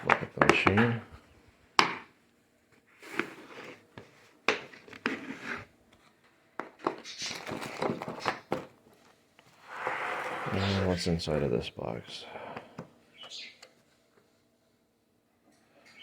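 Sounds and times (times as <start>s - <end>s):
packaging rustling: 7.1s - 9.0s.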